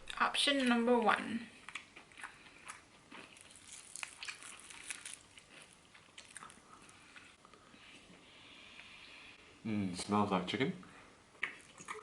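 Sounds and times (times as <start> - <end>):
person crunching and chewing: 1.6 - 7.4.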